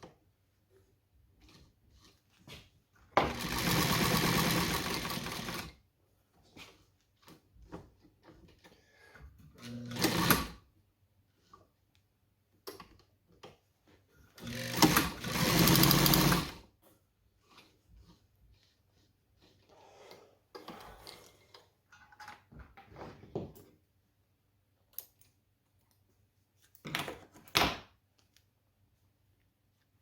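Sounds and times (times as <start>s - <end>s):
sewing machine running: 3.2s - 5.7s, 9.6s - 10.6s, 14.4s - 16.6s.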